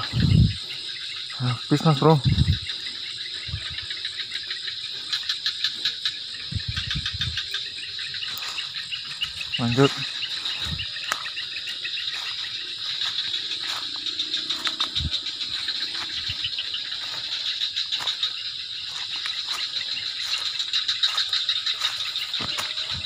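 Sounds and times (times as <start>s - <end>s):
crickets and insects trilling: 0.0s - 23.0s.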